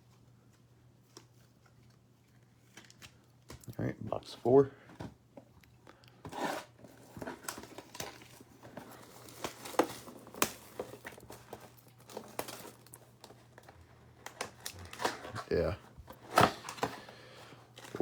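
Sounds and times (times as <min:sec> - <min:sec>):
plastic wrapping tearing and crinkling: 0:06.4 - 0:17.1.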